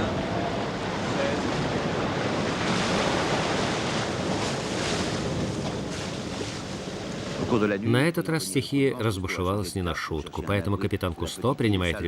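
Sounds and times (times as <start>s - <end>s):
rough sea water rushing: 0.0s - 8.7s.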